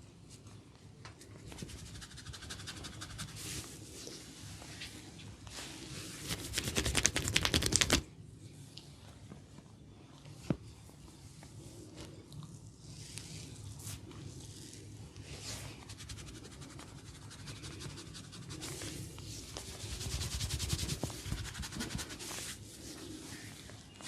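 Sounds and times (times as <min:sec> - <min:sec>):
fingers scratching scalp and hair: 0:01.6 - 0:03.7, 0:06.2 - 0:08.0, 0:15.5 - 0:22.6.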